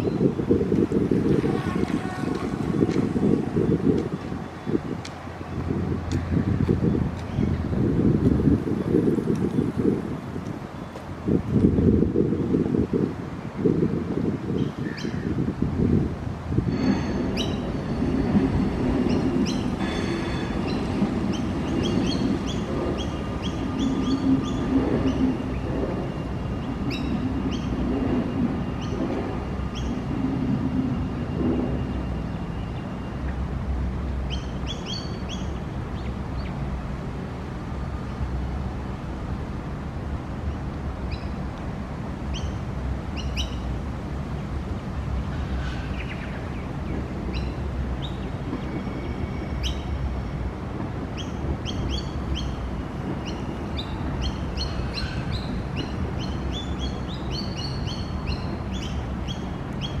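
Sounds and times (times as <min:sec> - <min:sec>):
steady low rumble: 0:00.0 - 0:34.7.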